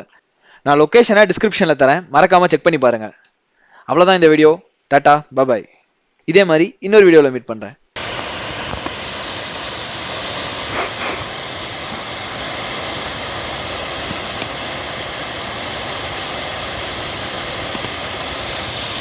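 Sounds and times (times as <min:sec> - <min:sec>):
waterfall rushing: 0:08.0 - 0:19.0.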